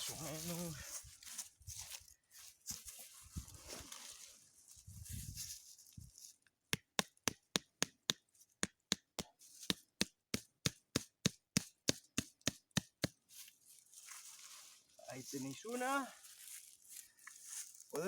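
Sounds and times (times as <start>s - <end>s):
tent stake hammered into ground: 6.7s - 13.2s.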